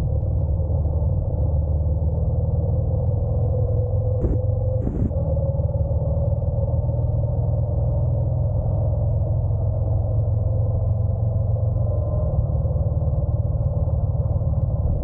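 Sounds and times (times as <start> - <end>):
wind rumble on microphone: 0.0 - 15.0
motorcycle engine running: 3.9 - 6.0.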